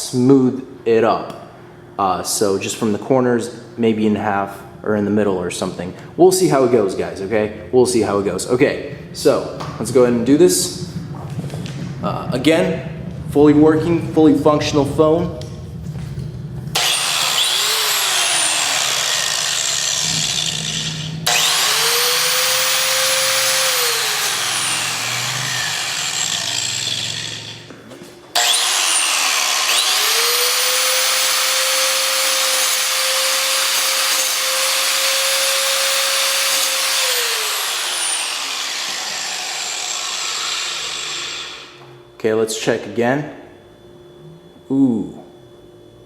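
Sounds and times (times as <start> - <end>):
angle grinder grinding metal: 16.7 - 27.7, 28.4 - 41.8.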